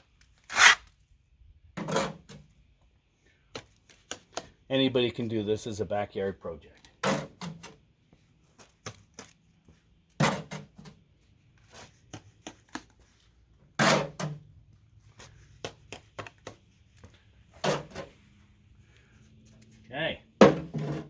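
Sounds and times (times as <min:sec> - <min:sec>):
trowel scraping mortar: 0:00.4 - 0:00.9.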